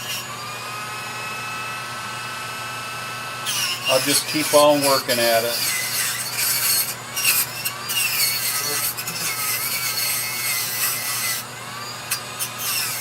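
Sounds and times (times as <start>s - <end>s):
rotary tool motor whine: 0.0s - 13.0s
abrasive wheel scratching wood: 3.5s - 13.0s.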